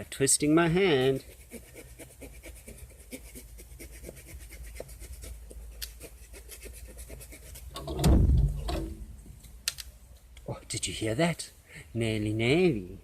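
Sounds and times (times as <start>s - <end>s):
small saw rasping through wood: 0.8s - 7.8s.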